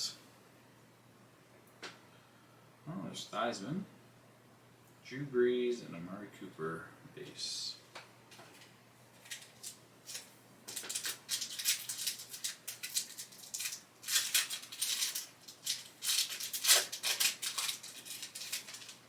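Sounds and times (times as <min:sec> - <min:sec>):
wrapper crinkling: 0:08.5 - 0:19.0.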